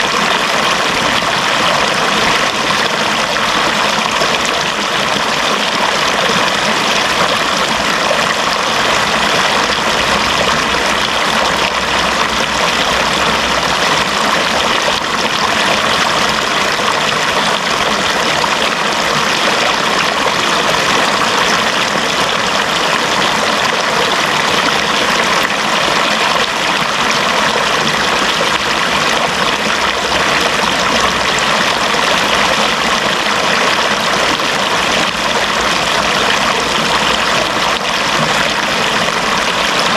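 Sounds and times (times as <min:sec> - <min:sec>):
running water flowing: 0:00.0 - 0:39.9.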